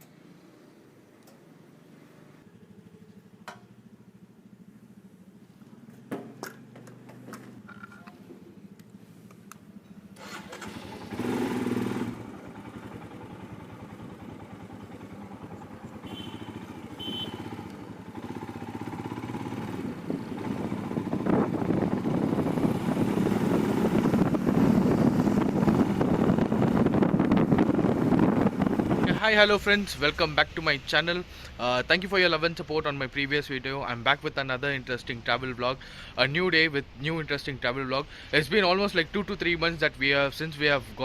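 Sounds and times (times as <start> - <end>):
motorcycle engine starting and running: 1.3 - 31.8.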